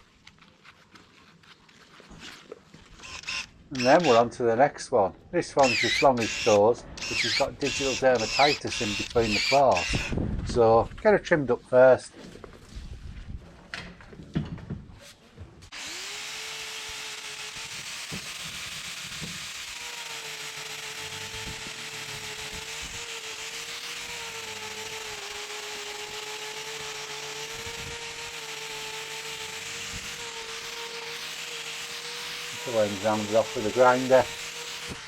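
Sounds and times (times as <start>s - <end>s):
angle grinder grinding: 2.1s - 4.4s, 5.4s - 10.2s, 15.7s - 35.0s.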